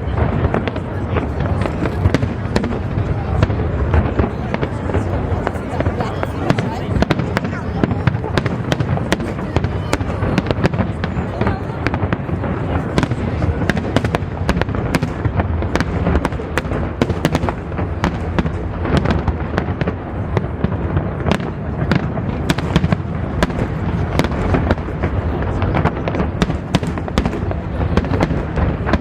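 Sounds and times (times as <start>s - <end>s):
fireworks crackling bursts: 0.0s - 29.0s.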